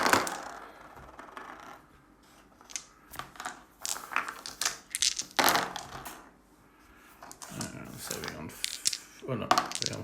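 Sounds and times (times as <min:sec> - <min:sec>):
dice rattling on a tabletop: 0:00.0 - 0:01.9, 0:02.6 - 0:06.2, 0:07.3 - 0:10.0.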